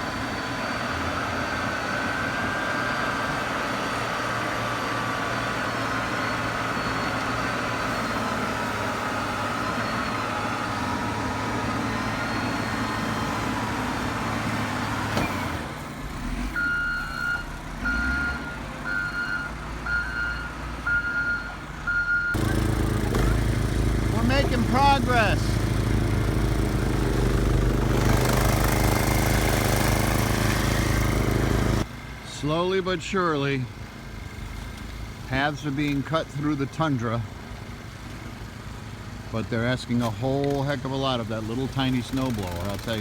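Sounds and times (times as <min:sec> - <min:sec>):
engine running: 0:00.0 - 0:43.0
reversing alarm beeps: 0:05.0 - 0:11.0, 0:12.0 - 0:13.3, 0:16.6 - 0:22.9.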